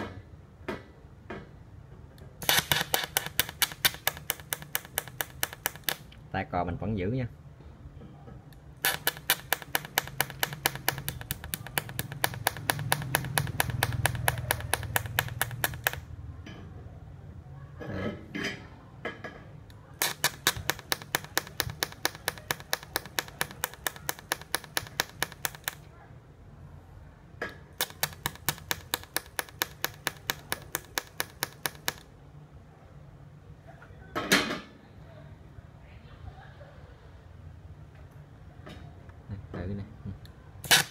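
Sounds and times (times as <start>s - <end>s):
welder attachment clicking rapidly: 2.4s - 6.0s, 8.8s - 16.0s, 20.0s - 25.8s, 27.8s - 32.0s, 40.6s - 40.9s.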